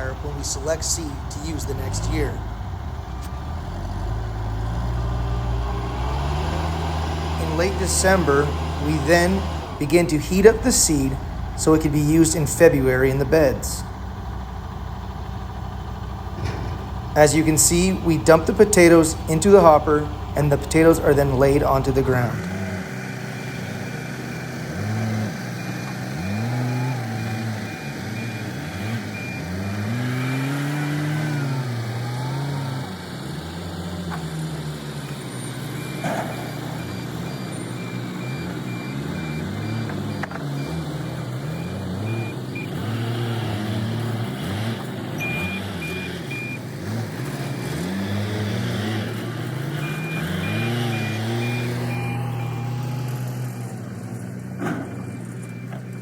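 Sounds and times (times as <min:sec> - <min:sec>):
farm machinery engine revving: 0:00.0 - 0:56.0
backup alarm beeping: 0:07.4 - 0:14.6, 0:16.4 - 0:22.6, 0:23.2 - 0:30.7, 0:35.0 - 0:43.0, 0:45.2 - 0:46.6, 0:49.7 - 0:53.8, 0:54.6 - 0:56.0.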